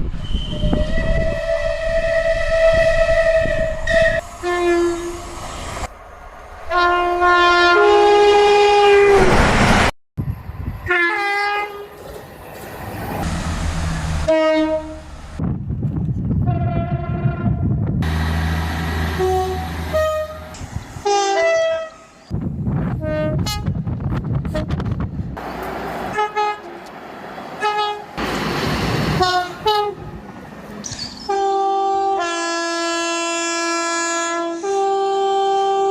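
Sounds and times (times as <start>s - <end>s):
passing trains rumbling: 0.0s - 35.9s
locomotive air horns: 0.5s - 5.4s, 6.7s - 9.2s, 14.2s - 15.1s, 18.9s - 22.2s, 26.1s - 26.8s, 27.6s - 28.1s, 29.1s - 30.1s, 31.2s - 35.9s.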